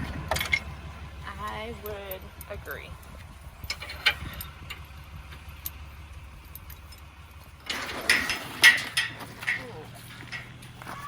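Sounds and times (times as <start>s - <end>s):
truck engine idling: 0.0s - 11.0s.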